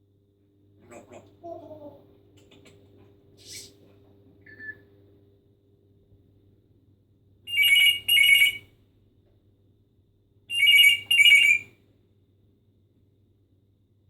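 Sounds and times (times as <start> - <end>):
parrot mimicking phone ringing: 7.5 - 8.7, 10.5 - 11.7.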